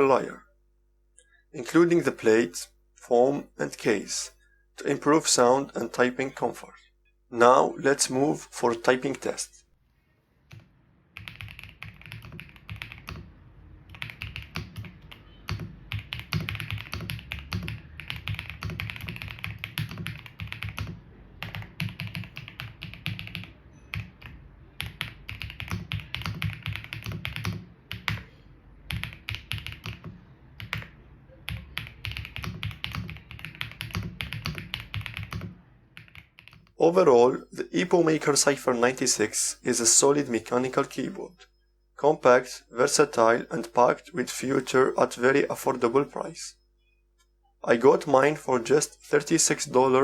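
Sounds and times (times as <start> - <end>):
mechanical keyboard typing: 10.5 - 28.3, 28.9 - 36.7.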